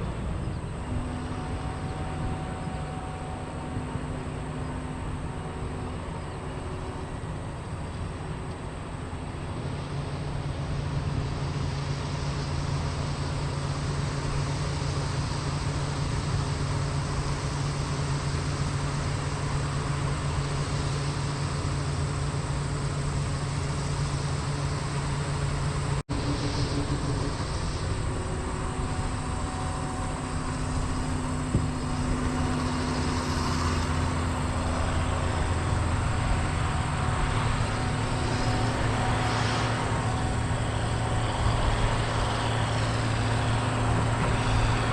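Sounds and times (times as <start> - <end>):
diesel engine running: 0.0 - 44.9
engine drone: 0.0 - 44.9.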